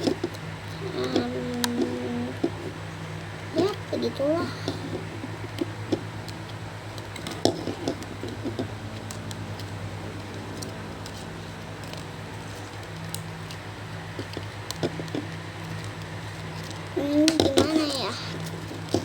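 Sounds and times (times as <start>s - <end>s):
steady low hum: 0.0s - 19.0s
plastic package clicking and crinkling: 4.7s - 19.0s.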